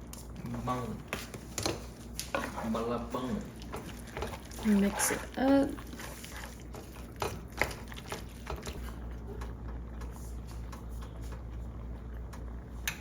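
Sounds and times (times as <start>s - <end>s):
spoon stirring thick sauce: 2.2s - 8.9s
spoon knocking and scraping pan: 3.7s - 8.8s.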